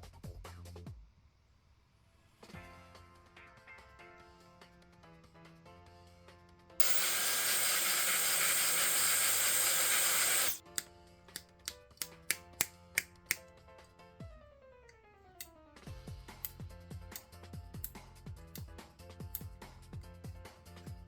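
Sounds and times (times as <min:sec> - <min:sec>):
background music: 0:02.4 - 0:07.2, 0:10.7 - 0:21.0.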